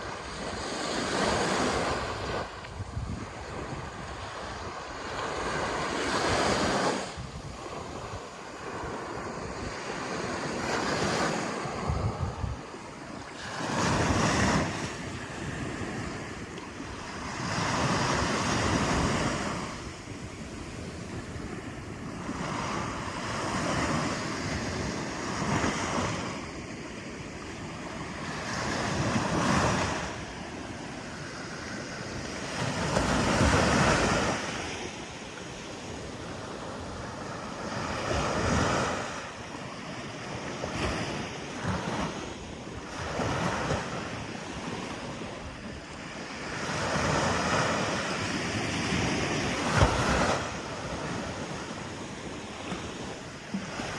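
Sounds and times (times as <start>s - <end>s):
sea waves breaking on shore: 0.0s - 53.9s.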